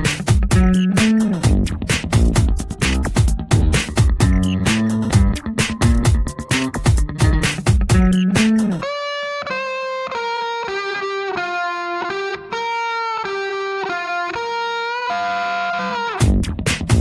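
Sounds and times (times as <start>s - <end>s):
drums: 0.0s - 8.8s, 16.2s - 17.0s
sliding melodic lead line: 0.0s - 16.5s.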